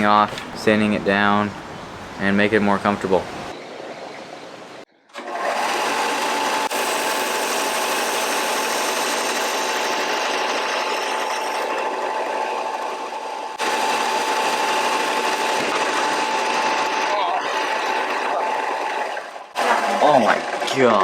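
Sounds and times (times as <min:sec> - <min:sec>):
power sander whining on wood: 0:05.2 - 0:21.0.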